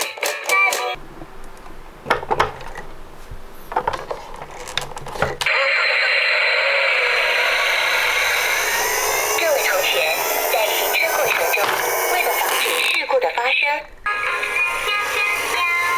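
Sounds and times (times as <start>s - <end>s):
plastic toy clicks and knocks: 3.7s - 5.5s, 7.2s - 13.3s
electronic toy tune: 14.1s - 15.9s.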